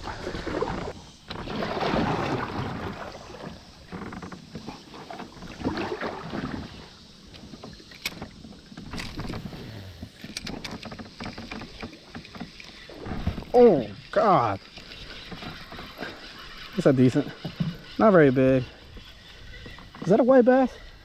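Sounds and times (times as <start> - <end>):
fishing gear rustling and clicking: 7.0 - 21.0.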